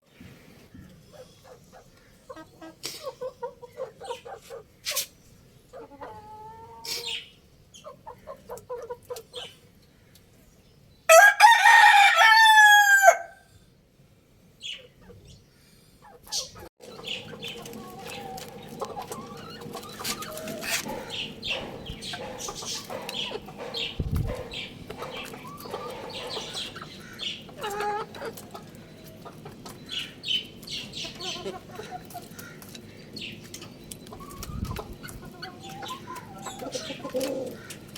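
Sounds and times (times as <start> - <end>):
chickens clucking: 0.6 - 10.3, 14.6 - 37.9
many short bird calls: 0.8 - 10.2, 14.6 - 37.9
rooster crowing: 11.1 - 13.4.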